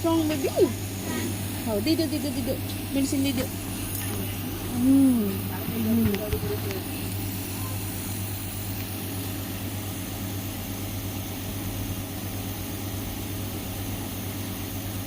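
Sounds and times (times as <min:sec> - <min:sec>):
air hissing: 0:00.0 - 0:09.2
nebulizer electric hum: 0:00.0 - 0:15.0.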